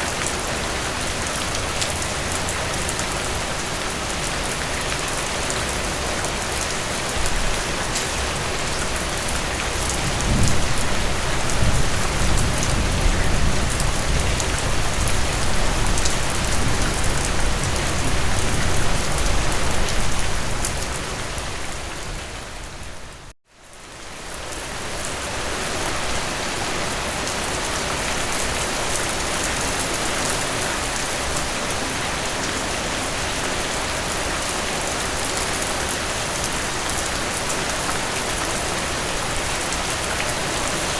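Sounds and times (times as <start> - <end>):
steady rain falling: 0.0 - 40.9
low rumble of thunder: 9.9 - 20.8.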